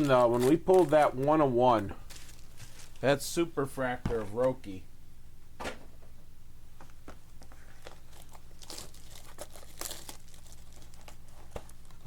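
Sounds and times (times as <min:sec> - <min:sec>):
plastic wrapping crinkling and tearing: 0:00.0 - 0:03.2, 0:07.7 - 0:12.0.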